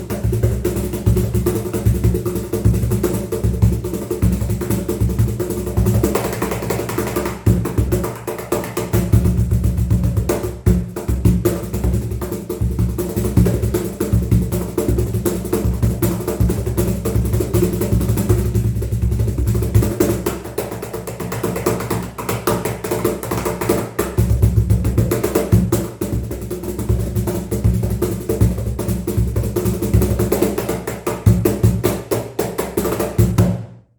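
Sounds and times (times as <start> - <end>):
cajon played by hand: 0.0 - 33.7.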